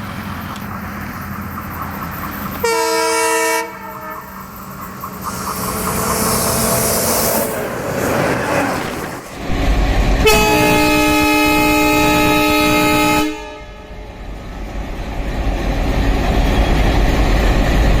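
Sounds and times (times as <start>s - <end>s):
diesel engine rumble: 0.0s - 18.0s
locomotive horn blast: 2.6s - 4.4s, 5.4s - 7.6s, 9.5s - 14.2s.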